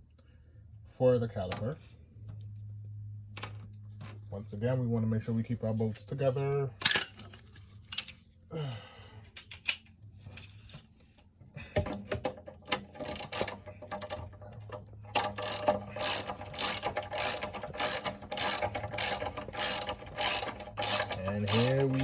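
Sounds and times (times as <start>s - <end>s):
hand ratchet clicking: 12.7s - 22.0s.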